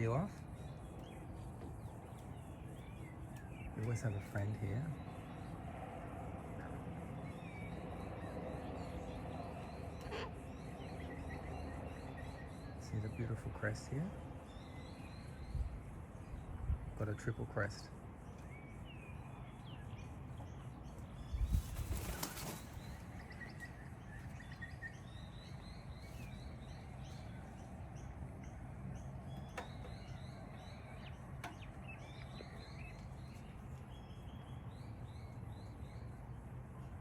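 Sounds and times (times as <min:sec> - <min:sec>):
small birds chirping faintly: 0:00.0 - 0:37.0
bird wings flapping: 0:21.4 - 0:23.3.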